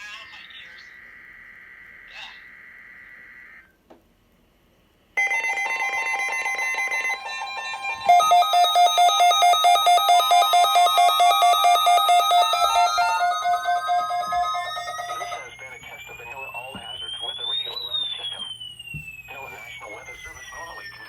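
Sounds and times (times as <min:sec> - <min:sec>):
electronic alert tone: 0:05.2 - 0:18.6
fast pulsing beeping alarm: 0:05.2 - 0:21.0.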